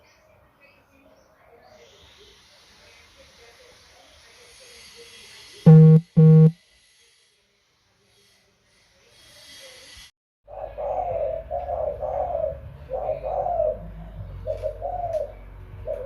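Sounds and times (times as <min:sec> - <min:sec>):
low buzzy tone: 0:05.7 - 0:06.6
short electronic beeps: 0:05.7 - 0:06.6
dove cooing: 0:10.5 - 0:16.0.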